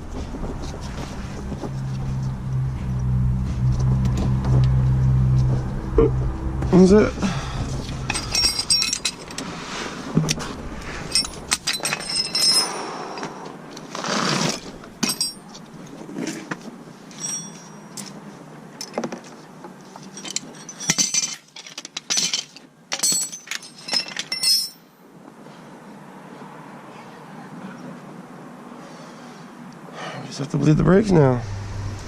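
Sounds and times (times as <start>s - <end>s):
metal tools clinking and clattering: 7.8s - 9.6s, 10.2s - 13.3s, 13.9s - 16.4s, 17.1s - 18.2s, 19.8s - 25.0s.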